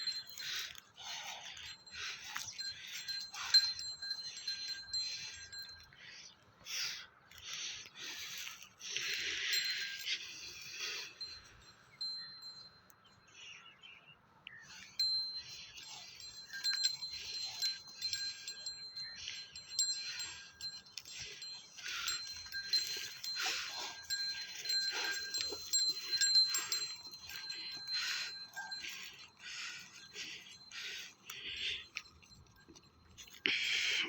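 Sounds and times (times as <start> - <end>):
steady high ring: 0.0 - 6.1, 14.7 - 34.0
small metal bells jingling: 0.0 - 13.5, 14.6 - 34.0.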